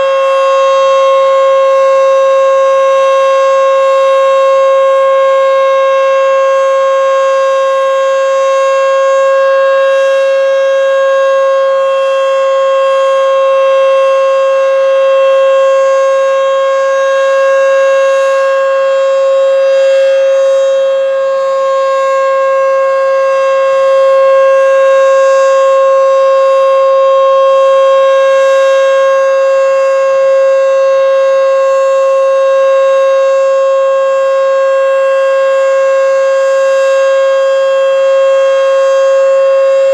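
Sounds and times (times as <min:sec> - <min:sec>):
steady warning siren: 0:00.0 - 0:39.9.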